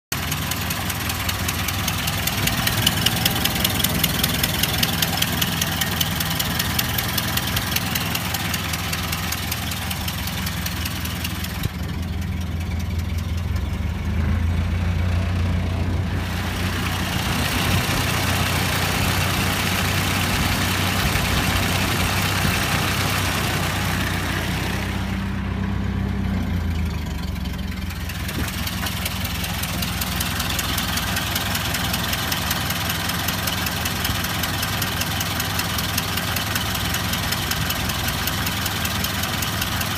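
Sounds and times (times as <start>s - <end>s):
car engine idling with rhythmic knock: 0.1s - 14.8s, 26.3s - 39.9s.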